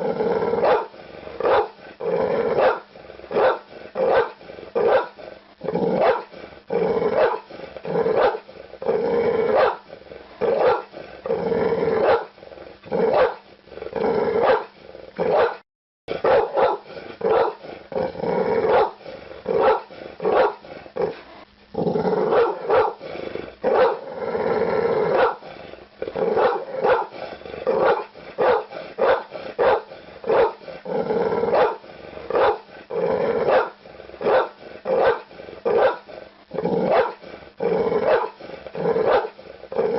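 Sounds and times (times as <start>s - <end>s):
dog barking: 0.6s - 1.8s, 2.6s - 5.2s, 6.0s - 6.3s, 7.2s - 7.5s, 8.2s - 8.4s, 9.5s - 9.8s, 10.5s - 10.9s, 12.0s - 12.3s, 13.1s - 13.4s, 14.4s - 14.7s, 15.3s - 15.6s, 16.2s - 17.6s, 18.7s - 19.0s, 19.6s - 20.6s, 22.3s - 23.0s, 23.7s - 24.0s, 25.1s - 25.4s, 26.4s - 27.2s, 27.8s - 30.6s, 31.5s - 32.6s, 33.5s - 36.1s, 36.9s - 37.2s, 38.0s - 38.4s, 39.0s - 39.4s.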